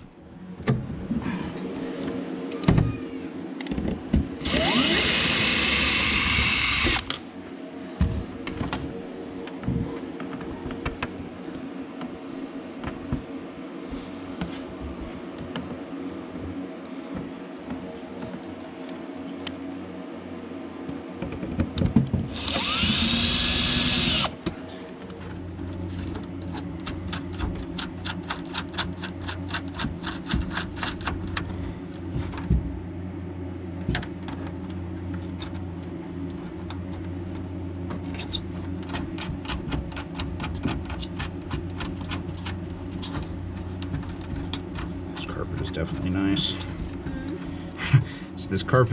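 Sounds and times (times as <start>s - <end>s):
power drill running: 4.4s - 7.2s, 22.3s - 24.4s.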